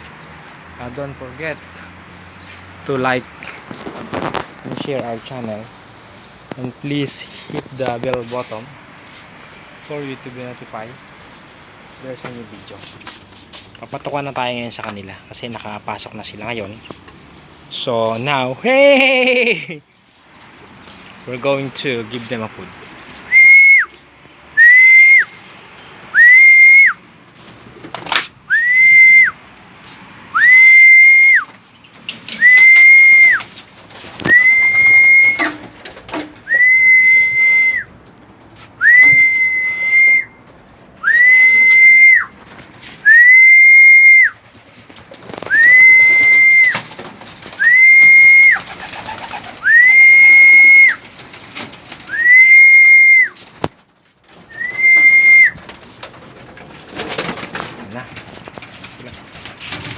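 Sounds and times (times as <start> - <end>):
whistle blasts: 24.6 - 25.3, 26.2 - 27.0, 28.5 - 29.4, 34.3 - 35.5, 36.5 - 37.9, 38.8 - 40.4, 41.0 - 42.3, 43.0 - 44.4, 54.5 - 55.6.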